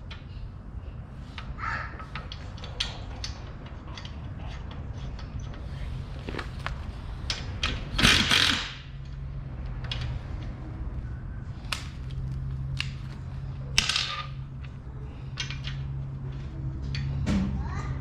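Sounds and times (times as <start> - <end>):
clicks of hard parts handled: 11.6 - 16.0.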